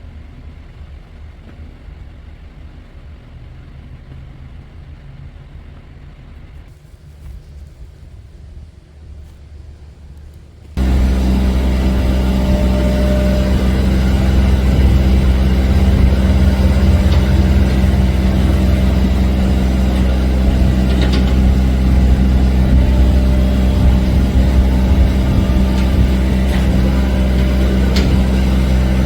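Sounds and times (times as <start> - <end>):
motor running steadily: 10.8 - 29.0.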